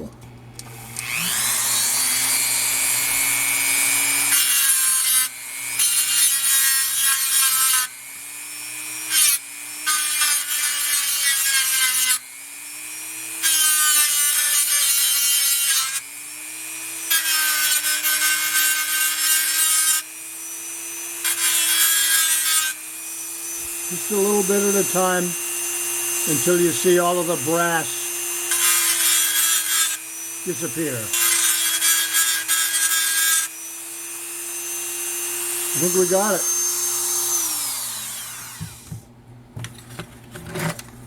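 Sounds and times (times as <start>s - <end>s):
rotary tool motor whine: 0.6s - 6.2s, 16.0s - 39.0s
rotary tool grinding metal: 0.8s - 39.0s.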